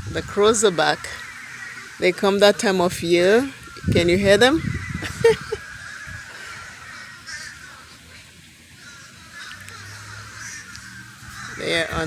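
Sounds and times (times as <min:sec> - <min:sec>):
crows cawing: 0:00.7 - 0:03.4, 0:04.6 - 0:12.0.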